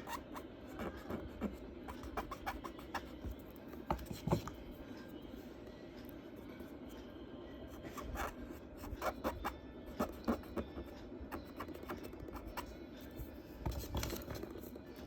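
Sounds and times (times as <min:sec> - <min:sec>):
charcoal scratching on paper: 0:00.0 - 0:03.3, 0:07.8 - 0:12.7.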